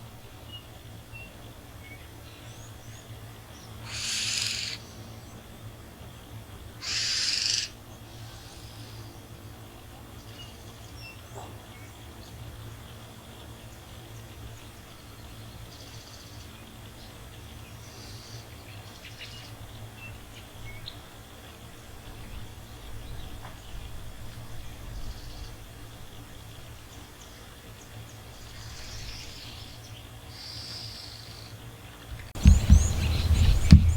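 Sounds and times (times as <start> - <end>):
low steady rumble: 32.1 - 33.9
bird chirps: 32.4 - 33.9.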